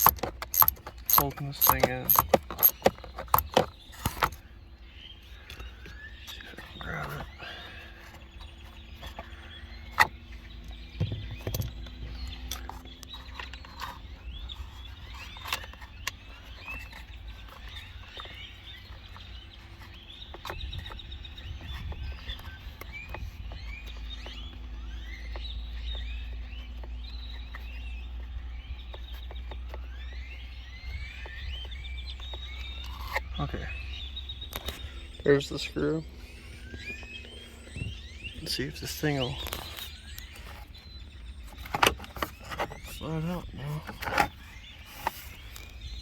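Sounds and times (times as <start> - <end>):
hand tool clicks and knocks: 0.0 - 4.4
chirping calls: 0.0 - 46.0.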